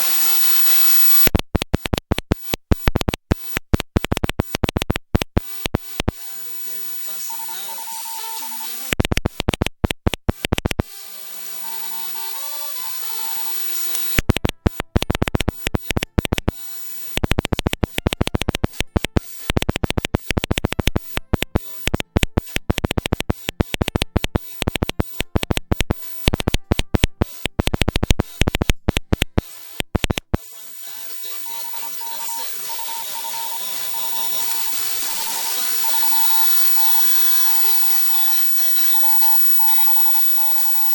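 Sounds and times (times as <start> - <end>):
steady beep tone: 0.0 - 1.3, 6.5 - 9.0, 11.4 - 16.6, 31.0 - 40.9
receiver hiss: 0.0 - 3.7, 4.5 - 9.6, 10.3 - 40.9
harsh noise bursts of morse keying: 0.0 - 40.9.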